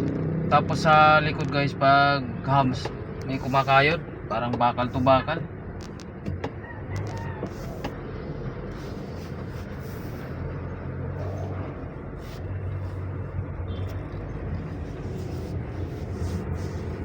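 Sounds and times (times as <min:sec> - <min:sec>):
car engine hum: 0:00.0 - 0:17.0
road noise: 0:00.0 - 0:17.0.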